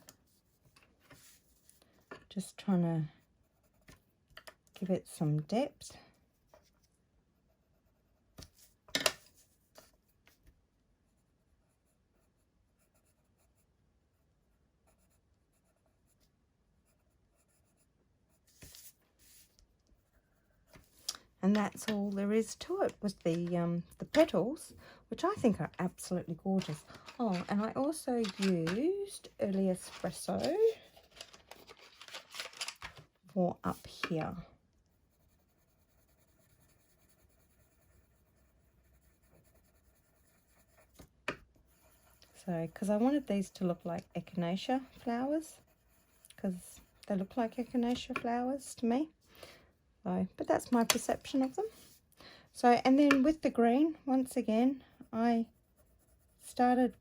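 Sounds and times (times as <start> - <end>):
pencil scratching on card: 7.4 - 10.0, 11.4 - 13.7, 14.8 - 24.3, 35.0 - 44.1, 44.8 - 48.1, 52.9 - 57.0
pencil scrape: 16.8 - 24.4.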